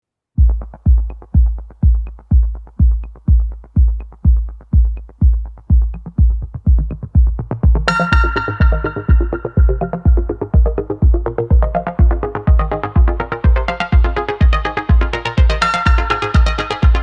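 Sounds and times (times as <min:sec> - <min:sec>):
electronic music with kick drum: 0:00.4 - 0:17.0
bright synthesizer chord: 0:07.9 - 0:17.0.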